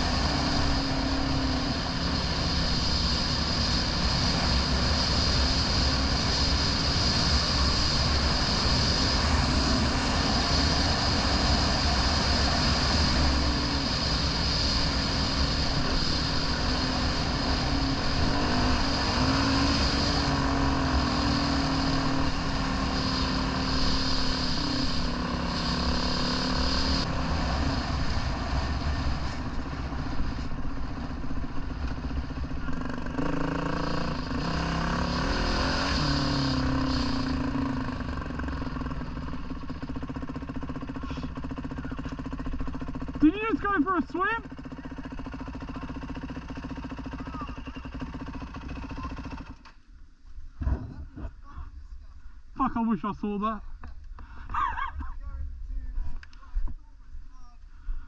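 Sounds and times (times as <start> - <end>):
dirt bike engine running: 0.0 - 49.9.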